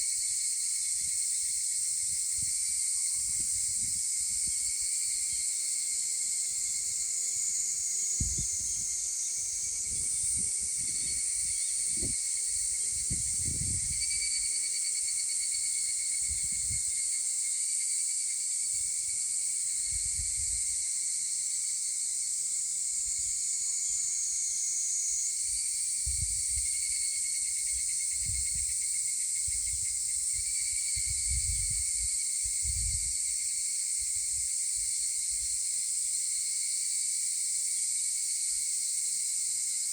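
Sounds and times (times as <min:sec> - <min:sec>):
cicadas singing in chorus: 0:00.0 - 0:39.9.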